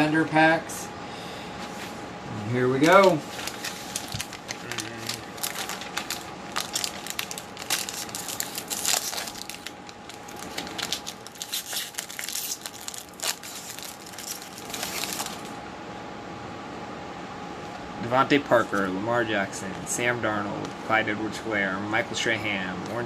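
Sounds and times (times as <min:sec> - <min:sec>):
foil wrappers tearing and crinkling: 0:02.8 - 0:15.5.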